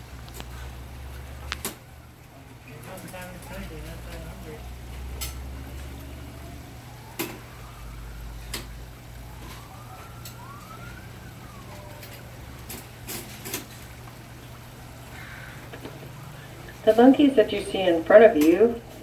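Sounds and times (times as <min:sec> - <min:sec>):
distant siren wailing: 0:04.3 - 0:19.0
steady low hum: 0:14.4 - 0:19.0.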